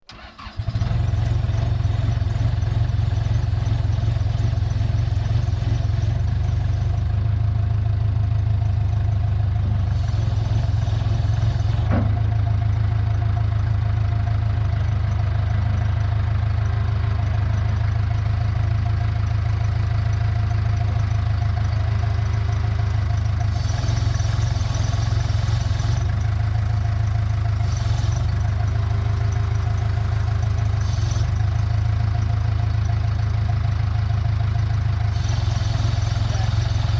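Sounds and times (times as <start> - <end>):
diesel engine idling: 0.0 - 36.9
hydraulic valve hiss: 1.5 - 7.2, 8.6 - 12.0, 23.5 - 26.1, 27.6 - 31.4, 35.1 - 36.9.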